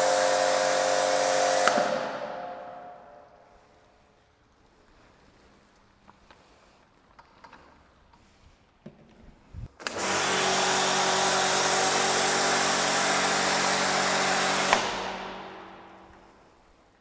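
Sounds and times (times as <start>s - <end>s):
pressure washer spraying: 0.0s - 3.2s, 9.8s - 16.1s
pressure washer switch click: 1.4s - 2.7s.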